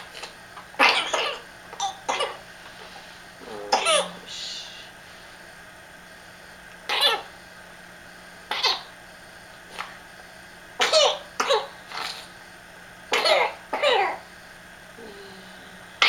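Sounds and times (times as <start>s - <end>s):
girl coughing: 0.8s - 2.4s, 3.7s - 4.4s, 8.5s - 8.9s, 10.8s - 11.7s, 13.1s - 14.2s.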